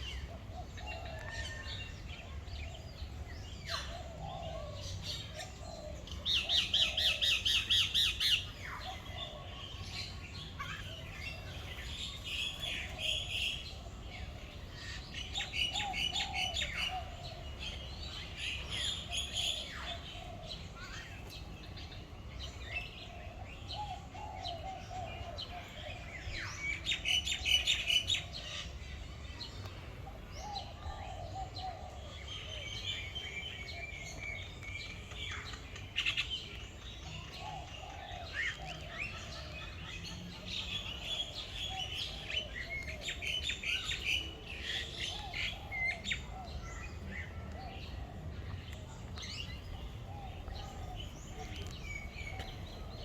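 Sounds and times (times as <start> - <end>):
birds chirping: 0.0 - 53.0
birds warbling: 0.0 - 53.0.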